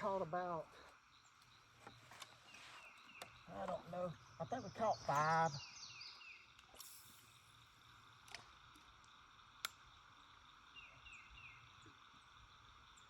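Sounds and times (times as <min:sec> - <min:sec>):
bird chirping: 0:00.0 - 0:08.0, 0:09.6 - 0:13.0
sharp clicks: 0:08.2 - 0:09.9.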